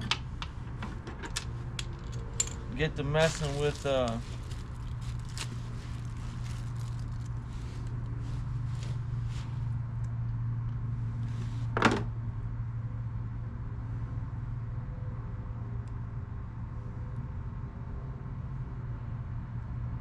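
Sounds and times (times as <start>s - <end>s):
steady low hum: 0.0s - 20.0s
small metal parts clicking: 1.3s - 5.5s.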